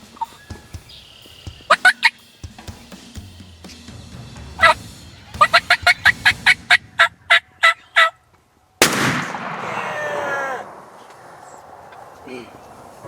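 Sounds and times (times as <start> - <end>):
wild turkey calling: 0.0 - 2.6, 4.6 - 8.3, 9.6 - 13.0
shotgun shot: 8.8 - 12.2.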